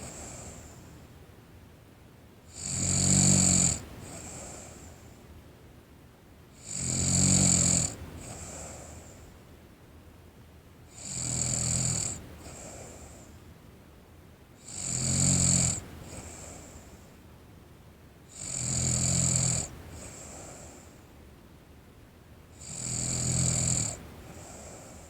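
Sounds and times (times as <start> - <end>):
soft breath: 0.0 - 1.2, 8.3 - 9.4, 12.4 - 13.5, 16.0 - 17.2, 19.8 - 21.2, 24.0 - 25.0.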